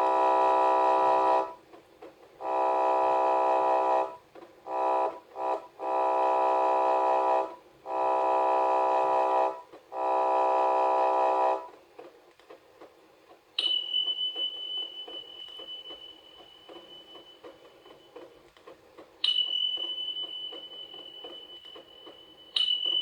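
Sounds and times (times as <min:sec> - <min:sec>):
steady high-pitched beep: 0:13.6 - 0:18.1, 0:19.2 - 0:23.0.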